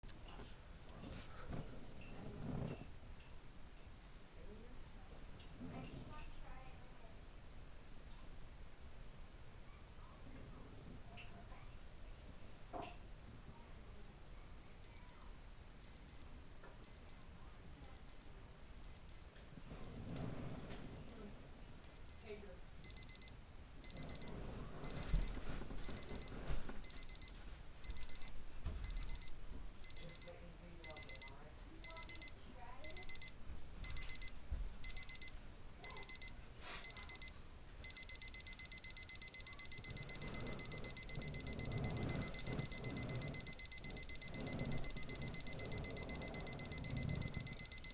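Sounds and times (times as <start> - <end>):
digital alarm clock beeping: 14.8 - 21.2, 21.8 - 47.9.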